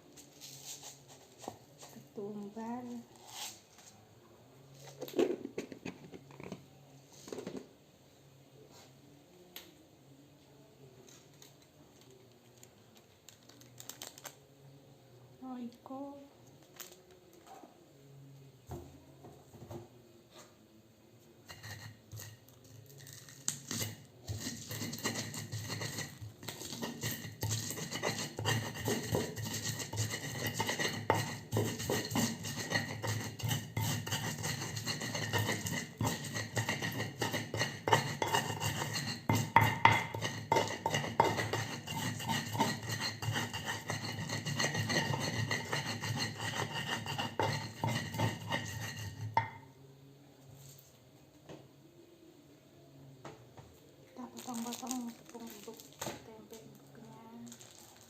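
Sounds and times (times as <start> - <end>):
utensil scraping against a bowl: 2.9 - 3.8, 21.4 - 49.6.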